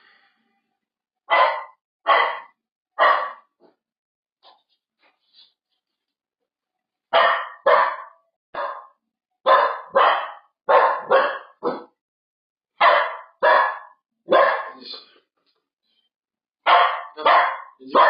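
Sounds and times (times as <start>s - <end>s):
puppy barking: 1.3s - 3.5s, 7.1s - 12.0s, 12.8s - 15.0s, 16.7s - 18.0s.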